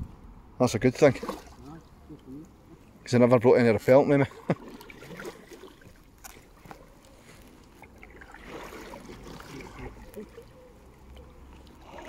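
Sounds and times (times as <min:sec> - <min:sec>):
paddle splashing and dripping: 0:01.0 - 0:02.3, 0:04.3 - 0:12.0.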